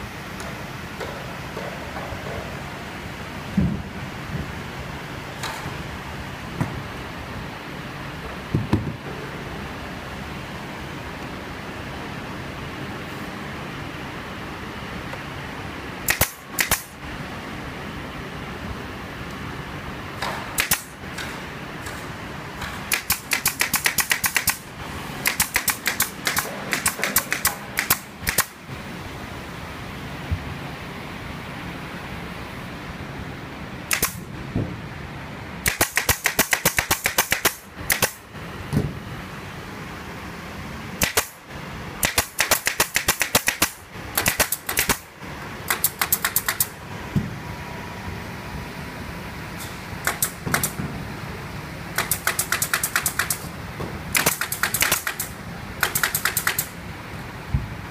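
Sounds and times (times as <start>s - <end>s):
factory machinery hum: 0.0s - 57.9s
pneumatic nailer firing: 16.0s - 17.0s, 20.2s - 28.6s, 33.9s - 34.3s, 35.6s - 38.2s, 41.0s - 41.4s, 42.0s - 45.1s, 45.7s - 46.8s, 49.6s - 51.0s, 52.0s - 53.5s, 54.1s - 56.8s.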